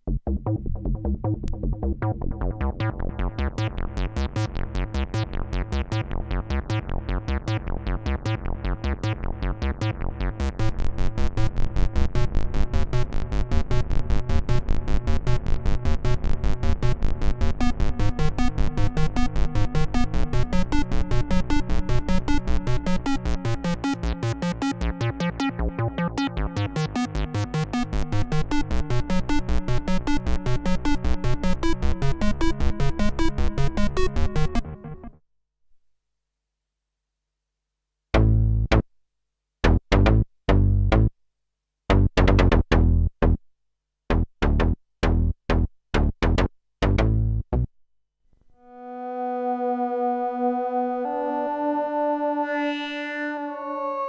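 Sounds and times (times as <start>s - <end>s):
synthesizer sequenced pattern: 17.6s - 35.0s.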